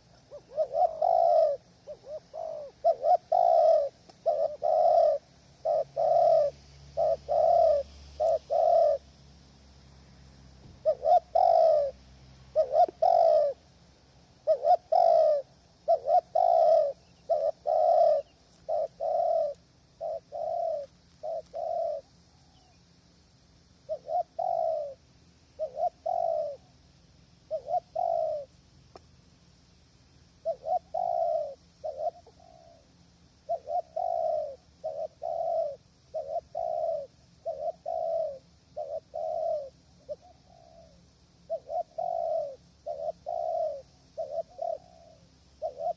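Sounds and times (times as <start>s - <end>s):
dove cooing: 0.0s - 9.1s, 10.6s - 22.8s, 23.8s - 26.8s, 27.4s - 28.6s, 30.3s - 45.9s.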